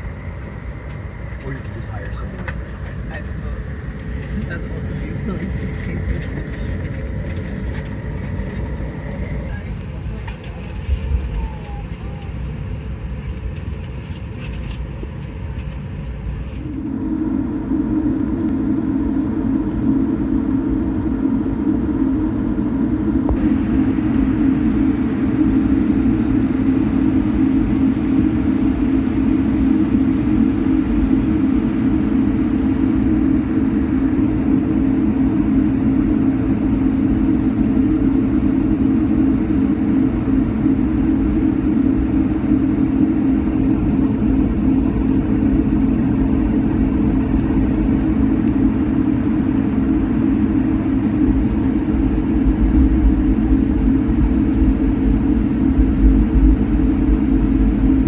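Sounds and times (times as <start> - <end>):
airplane cabin engine drone: 0.0 - 58.0
faint high whine: 16.0 - 58.0.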